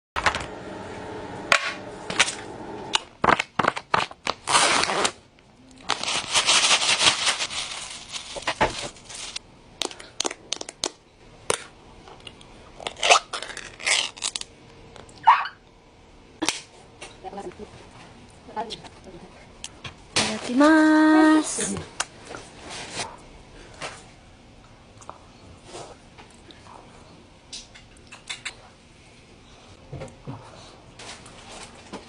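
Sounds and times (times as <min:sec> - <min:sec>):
plastic packaging crinkling: 0:05.8 - 0:10.9, 0:12.8 - 0:14.5.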